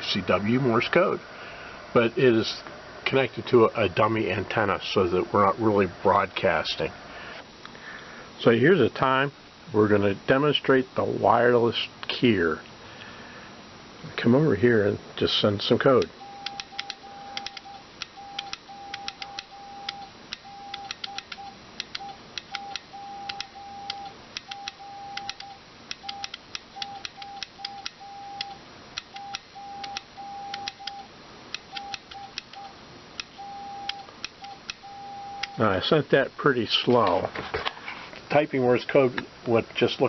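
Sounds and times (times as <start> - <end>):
sharp keying clicks: 16.0 - 35.6
morse code beeps: 16.2 - 31.1, 31.7 - 35.6.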